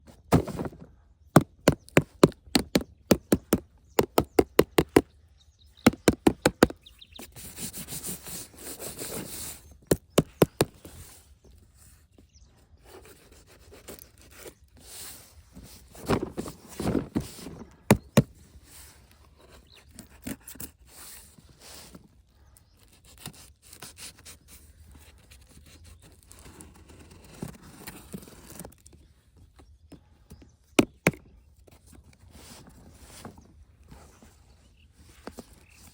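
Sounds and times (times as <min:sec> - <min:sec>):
packaging clicks and knocks: 0:01.4 - 0:05.1, 0:05.8 - 0:06.8, 0:09.8 - 0:10.9.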